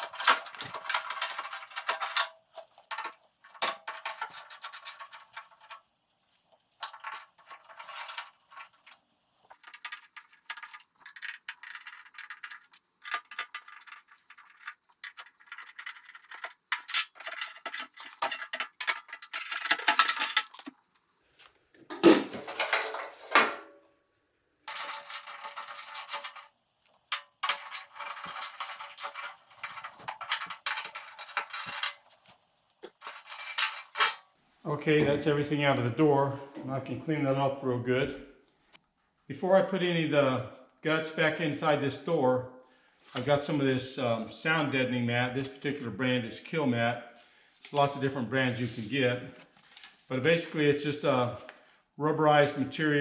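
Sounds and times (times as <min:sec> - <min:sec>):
metal tools clinking and clattering: 0:00.0 - 0:20.9, 0:21.9 - 0:23.7, 0:24.7 - 0:26.5, 0:27.1 - 0:34.3.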